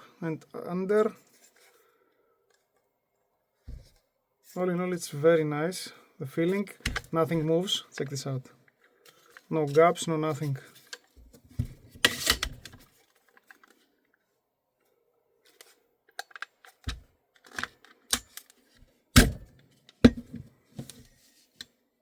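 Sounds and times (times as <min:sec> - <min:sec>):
rifle parts clicking and knocking: 0:15.6 - 0:18.6.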